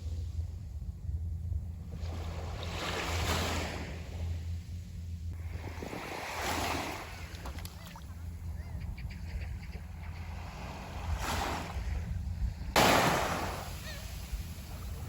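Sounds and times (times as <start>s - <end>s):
low wind rumble: 0.0s - 15.0s
sea waves washing on shore: 1.9s - 4.3s, 5.4s - 8.1s, 10.3s - 15.0s.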